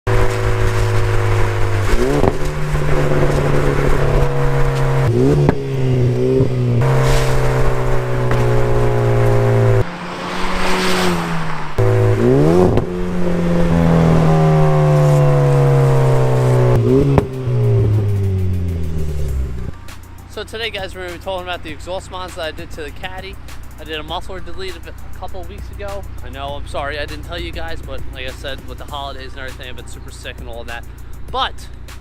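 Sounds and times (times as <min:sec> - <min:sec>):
loud car engine: 0:00.1 - 0:32.0.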